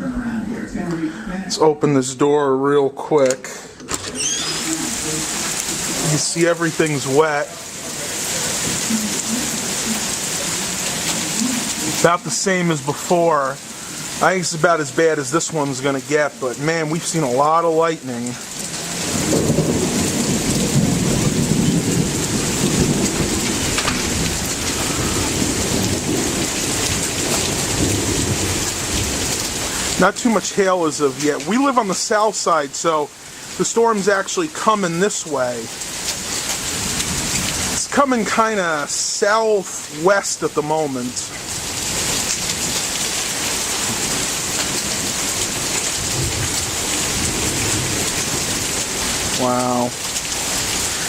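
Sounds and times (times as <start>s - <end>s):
heavy rain pouring: 3.3s - 51.0s
low thunder rumble: 18.8s - 30.0s, 43.7s - 49.4s.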